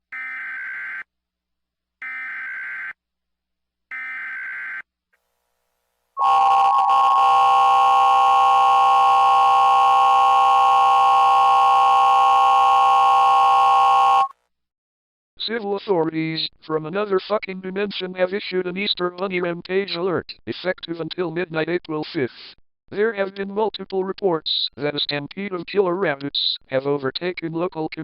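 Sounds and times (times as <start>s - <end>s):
two-tone attention signal: 6.2s - 14.3s.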